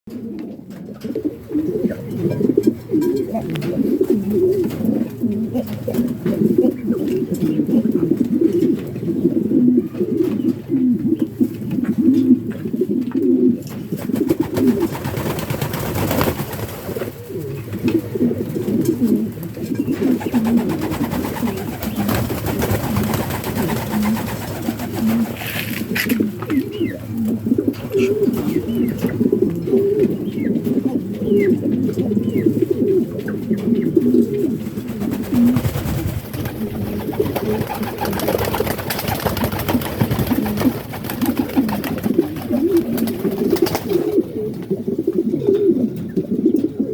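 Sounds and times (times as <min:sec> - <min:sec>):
pigeons cooing: 0:00.1 - 0:46.9
rustling noise: 0:21.9 - 0:26.7.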